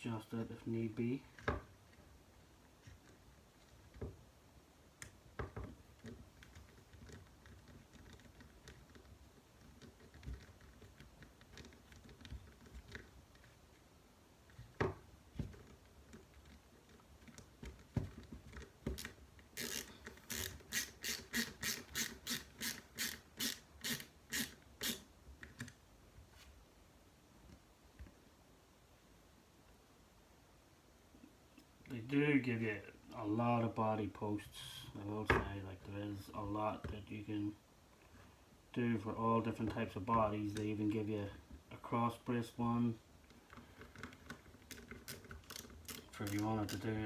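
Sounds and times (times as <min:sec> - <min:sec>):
small clicks and knocks of parts: 0:05.0 - 0:25.8, 0:43.2 - 0:47.0.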